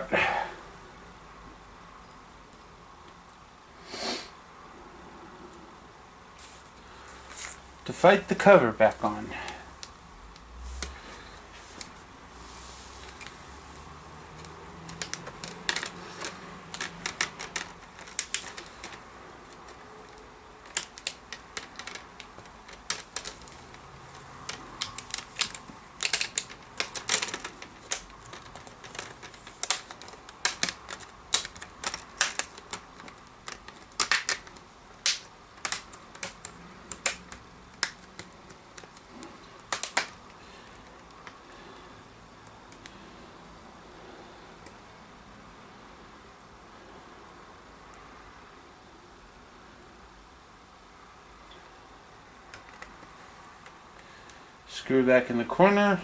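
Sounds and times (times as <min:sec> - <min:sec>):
plastic clips clicking: 0:14.2 - 0:41.5, 0:42.4 - 0:43.0, 0:52.5 - 0:54.1.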